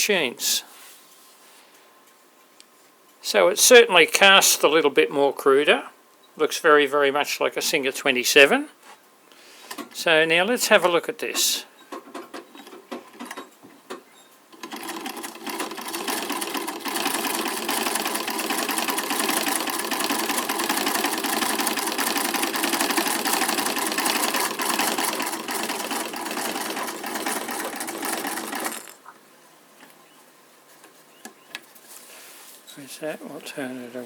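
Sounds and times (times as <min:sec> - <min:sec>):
treadle sewing machine stitching: 0:14.6 - 0:29.0.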